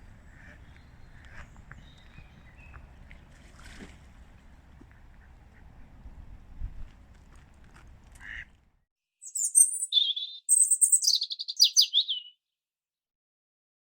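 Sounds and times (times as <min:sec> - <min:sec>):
small songbird chirping: 0:00.6 - 0:03.0, 0:09.2 - 0:12.4.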